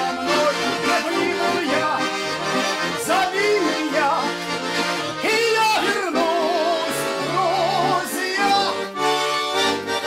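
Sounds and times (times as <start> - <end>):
man singing with vibrato: 0.0 - 9.2
button accordion chords: 0.0 - 10.0.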